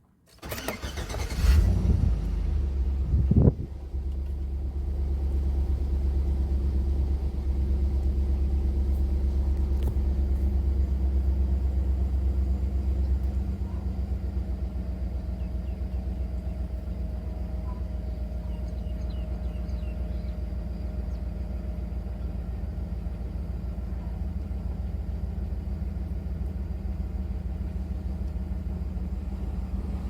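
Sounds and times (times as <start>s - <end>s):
engine starter cranking: 0.3s - 2.2s
engine starting and idling: 0.3s - 21.6s.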